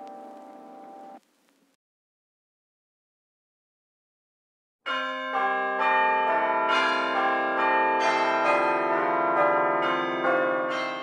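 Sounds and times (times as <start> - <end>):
church bells ringing: 4.9 - 11.0.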